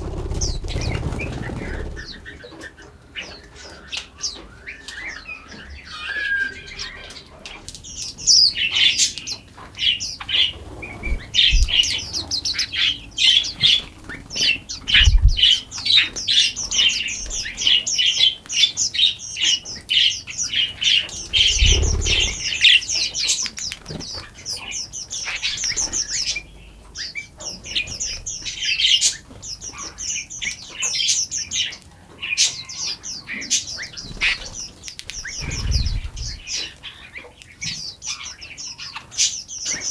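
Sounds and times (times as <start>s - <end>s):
low thumps: 0.0s - 2.4s
songbirds chirping and singing: 0.0s - 39.9s.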